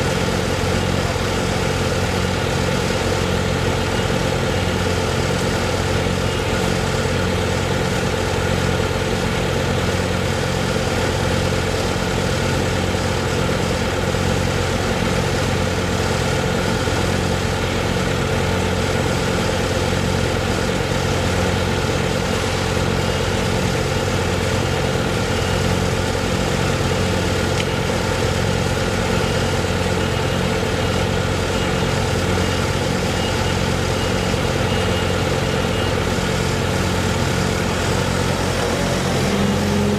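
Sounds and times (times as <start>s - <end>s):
large engine idling: 0.0s - 39.9s.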